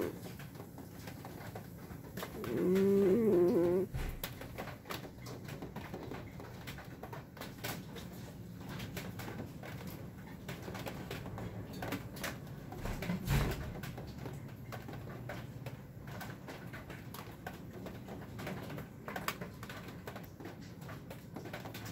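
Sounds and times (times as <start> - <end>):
cat snoring softly: 0.0 - 0.3, 2.2 - 4.2.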